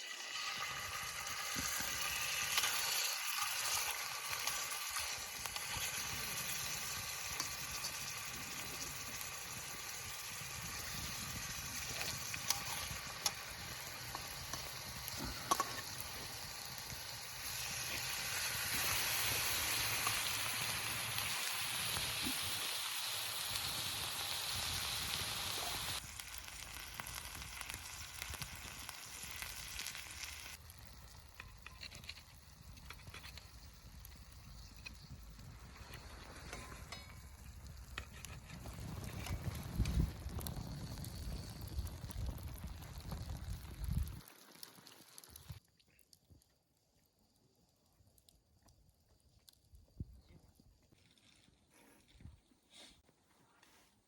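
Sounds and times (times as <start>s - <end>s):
food sizzling in a pan: 0.0s - 45.7s
oil popping: 26.2s - 45.6s.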